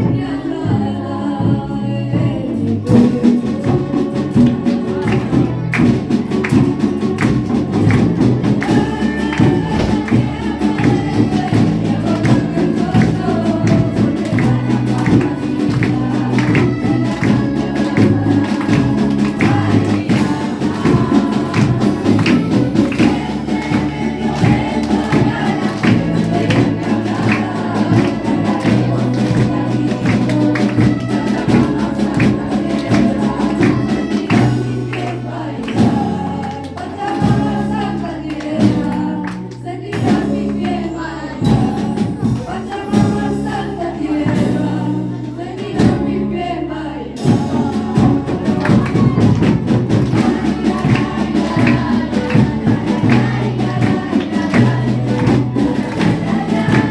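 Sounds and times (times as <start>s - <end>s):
sustained bass notes: 0.0s - 56.9s
voices singing: 0.0s - 56.9s
steady beat: 2.4s - 38.1s, 47.2s - 56.9s.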